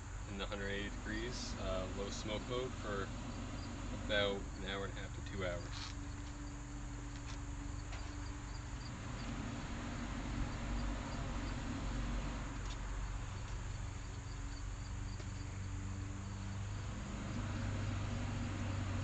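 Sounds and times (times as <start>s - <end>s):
grill fan humming: 0.0s - 19.0s.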